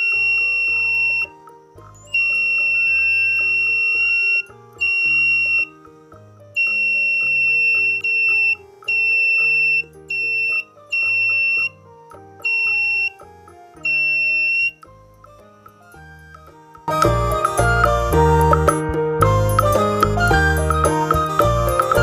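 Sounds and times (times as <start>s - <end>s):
electronic buzzer beeping: 0.0s - 1.3s, 2.0s - 5.8s, 6.6s - 11.8s, 12.4s - 14.9s
background music: 0.0s - 22.0s.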